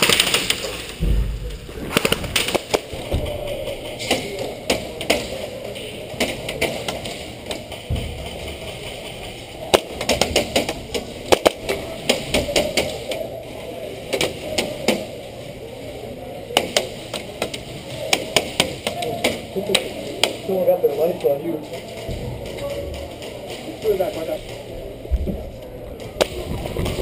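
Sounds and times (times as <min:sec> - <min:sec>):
airsoft guns firing: 0:00.0 - 0:07.3
pellets striking hard surfaces: 0:00.0 - 0:13.2.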